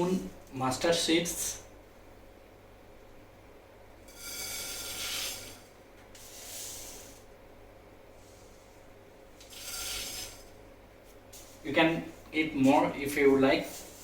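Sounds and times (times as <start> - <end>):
seeds rattling into a hot pot: 4.1 - 7.2, 9.4 - 10.6.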